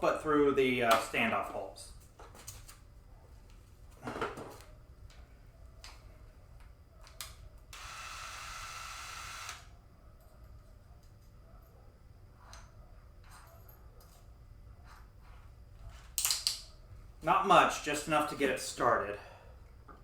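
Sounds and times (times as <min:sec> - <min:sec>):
cordless drill spinning: 0:07.8 - 0:09.7.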